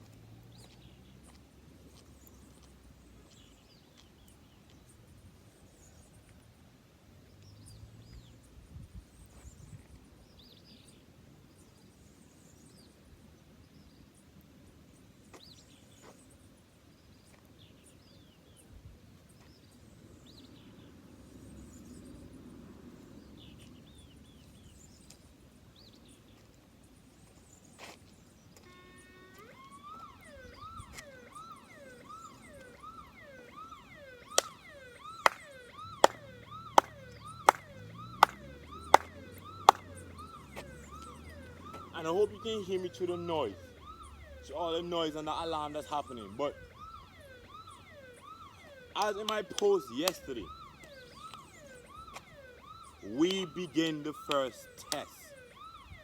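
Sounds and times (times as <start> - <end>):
electronic alarm yelping tone: 28.7 - 55.9.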